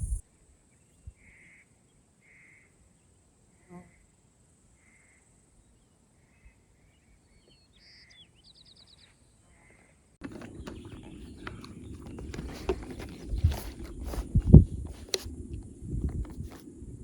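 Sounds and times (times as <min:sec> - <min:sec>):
faint bird calls: 0:01.0 - 0:04.1, 0:04.8 - 0:15.2
loud clicks and rustling: 0:10.2 - 0:15.4.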